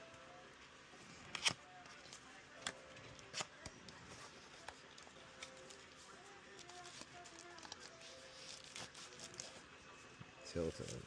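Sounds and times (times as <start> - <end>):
packaging clicks and rustles: 1.3 - 9.7, 10.6 - 11.0.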